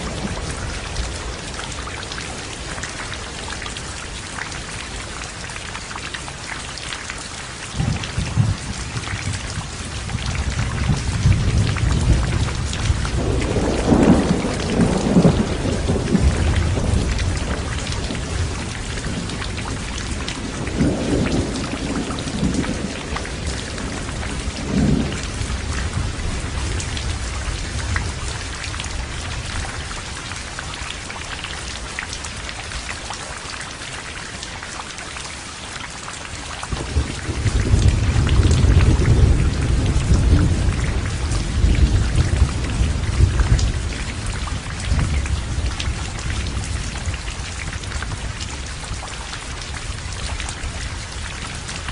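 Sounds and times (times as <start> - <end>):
heavy rain falling: 0.0 - 51.9
thunder rumble: 7.8 - 29.7, 36.7 - 48.3.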